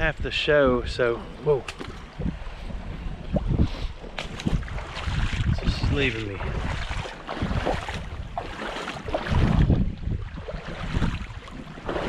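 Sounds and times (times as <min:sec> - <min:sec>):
water splashing around wading boots: 0:01.4 - 0:12.0.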